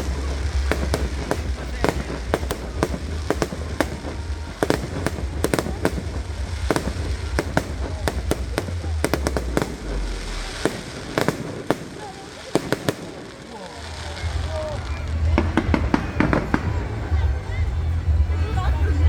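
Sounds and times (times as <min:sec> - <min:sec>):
low rumble: 0:00.0 - 0:11.3
fireworks bangs and crackles: 0:00.0 - 0:18.8.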